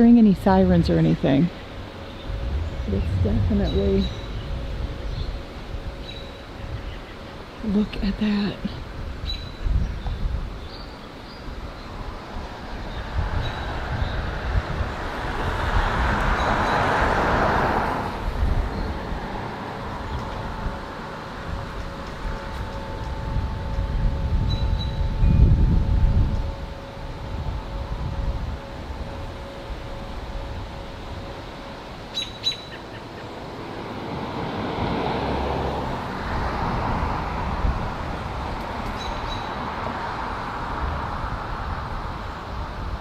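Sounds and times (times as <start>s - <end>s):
low outdoor rumble: 0.0s - 9.2s
wind gusting on microphone: 0.0s - 43.0s
rushing noise: 1.5s - 6.2s
bird chirping: 1.5s - 7.4s, 32.1s - 33.4s.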